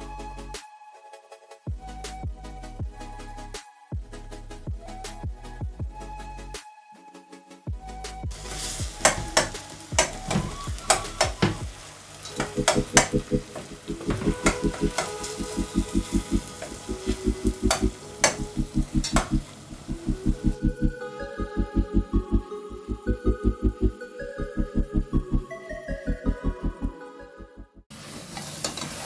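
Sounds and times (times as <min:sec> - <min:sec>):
food sizzling in a pan: 0:08.3 - 0:20.6, 0:27.9 - 0:29.0
utensil clicking against pan: 0:08.3 - 0:20.6.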